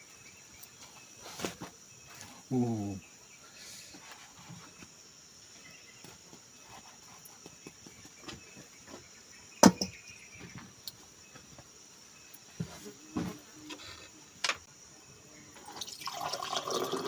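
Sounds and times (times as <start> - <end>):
insects chirring: 0.0 - 17.0
sharp knock: 9.6 - 10.0.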